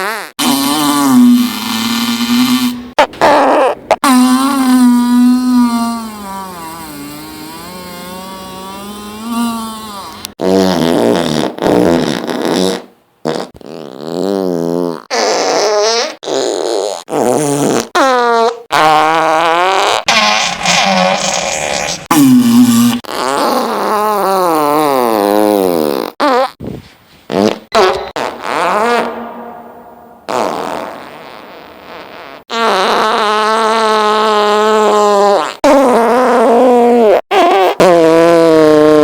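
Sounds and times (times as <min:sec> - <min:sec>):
farts: 0:00.0 - 0:39.0.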